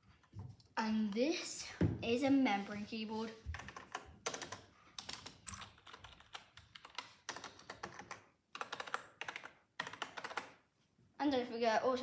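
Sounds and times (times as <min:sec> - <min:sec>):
keyboard keys clicking: 0:03.6 - 0:10.5.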